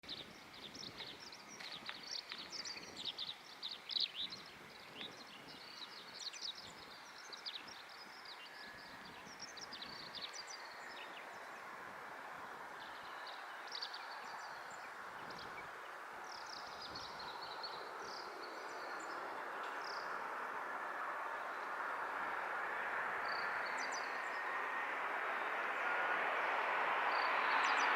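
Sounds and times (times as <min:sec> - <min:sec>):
small birds chirping: 0:00.0 - 0:11.7.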